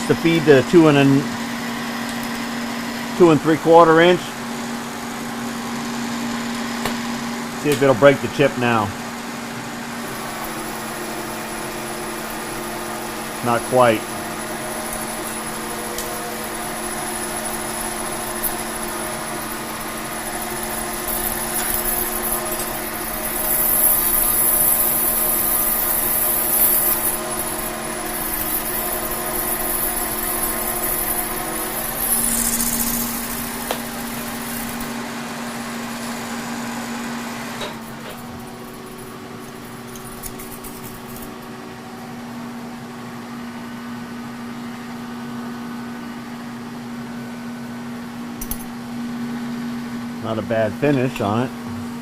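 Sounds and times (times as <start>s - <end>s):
machine hum with gear tones: 9.1s - 42.0s
high whine: 10.0s - 36.5s.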